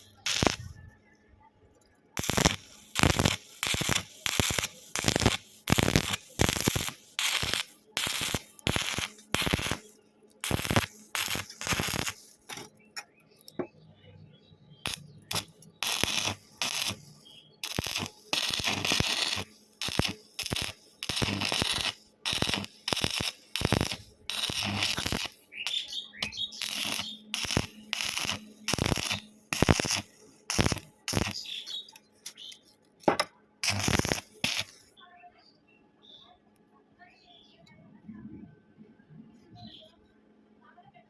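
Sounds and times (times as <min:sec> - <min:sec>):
arc welding crackling and hissing: 0:00.0 - 0:00.8, 0:02.2 - 0:12.7, 0:14.8 - 0:35.0.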